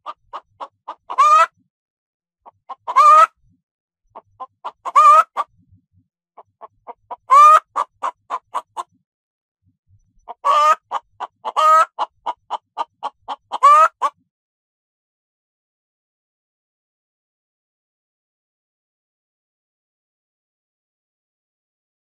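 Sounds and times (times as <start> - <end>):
hen cackling: 0.0 - 1.5, 2.5 - 3.4, 4.2 - 5.5, 6.6 - 8.8, 10.3 - 14.2.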